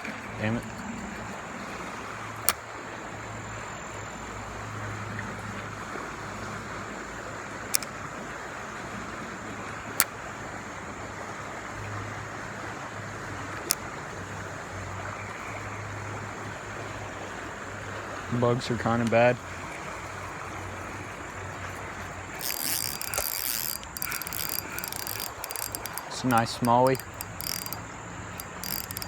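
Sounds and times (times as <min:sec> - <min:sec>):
fast-flowing river water: 0:00.0 - 0:29.0
sharp clicks: 0:07.7 - 0:08.0, 0:22.4 - 0:29.0.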